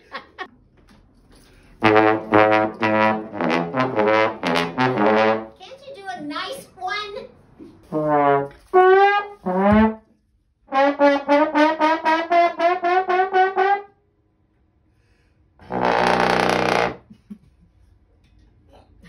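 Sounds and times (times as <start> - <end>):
loud raspy trombone blast: 1.8 - 5.6, 7.8 - 10.1, 10.7 - 14.0, 15.6 - 17.1
trombone comic phrases: 1.8 - 5.6, 7.9 - 10.0, 15.6 - 17.0.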